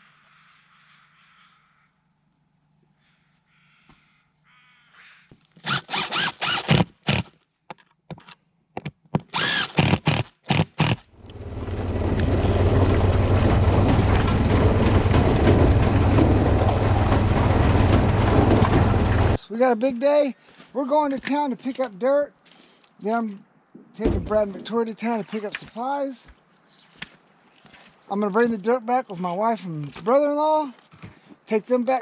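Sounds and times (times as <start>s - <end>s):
power drill bursts: 5.6s - 7.3s, 9.3s - 11.0s
steady motor drone: 10.8s - 19.4s.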